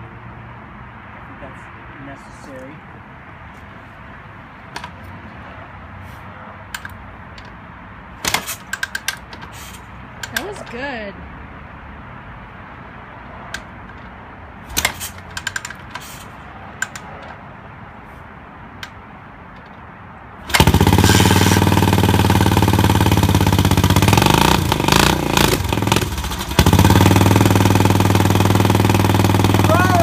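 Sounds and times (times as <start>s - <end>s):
clicks and clunks: 4.7s - 5.2s, 6.7s - 7.6s, 8.2s - 9.6s, 10.2s - 10.8s, 13.5s - 17.4s, 18.8s - 19.8s
motorcycle engine idling: 20.5s - 30.0s.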